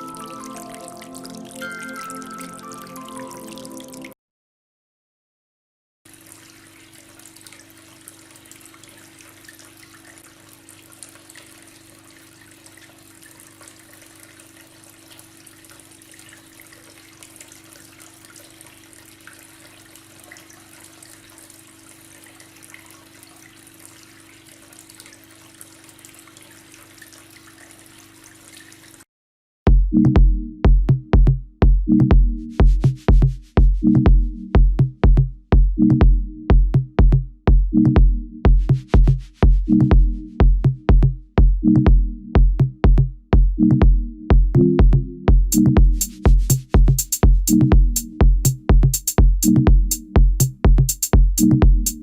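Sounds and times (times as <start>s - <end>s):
fountain water trickling and splashing: 0.0s - 4.2s, 6.1s - 29.0s.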